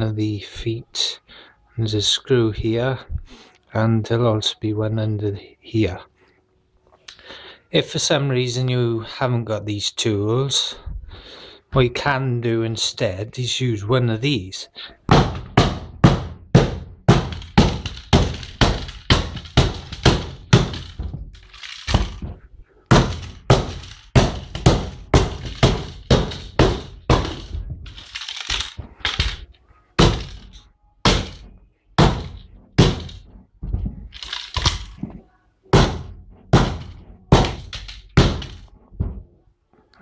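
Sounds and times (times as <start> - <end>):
tool smashing plastic router: 15.1 - 22.3, 22.9 - 29.4, 30.0 - 30.5
plastic casing cracking: 27.3 - 29.5.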